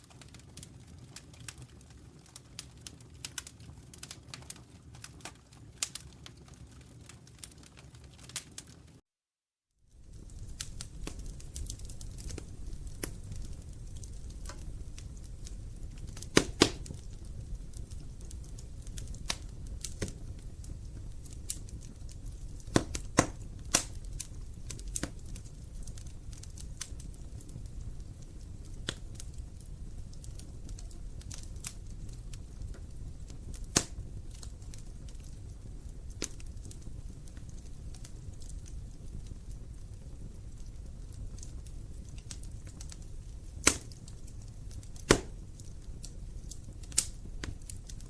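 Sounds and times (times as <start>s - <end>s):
wood fire crackling: 0.0s - 9.0s, 9.8s - 48.0s
sharp pops and snaps: 10.4s - 17.1s, 17.8s - 20.2s, 22.6s - 25.2s, 28.8s - 29.3s, 33.5s - 35.2s, 36.1s - 38.8s, 41.3s - 48.0s.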